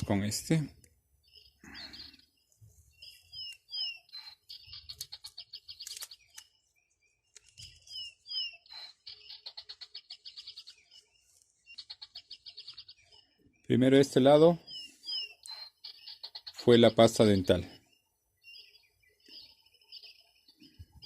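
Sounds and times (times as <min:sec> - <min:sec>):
songbird chirping and trilling: 0:00.0 - 0:21.0.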